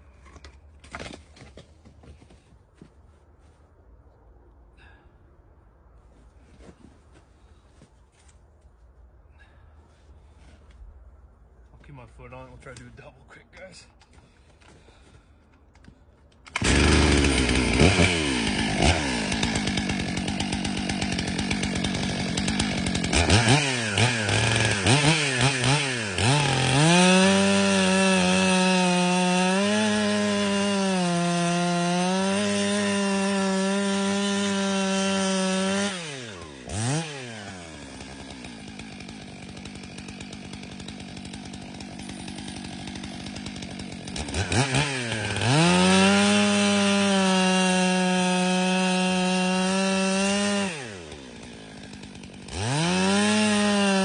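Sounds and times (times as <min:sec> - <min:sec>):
chainsaw cutting log: 0:00.1 - 0:02.3, 0:15.9 - 0:54.0
chainsaw idling: 0:16.4 - 0:54.0.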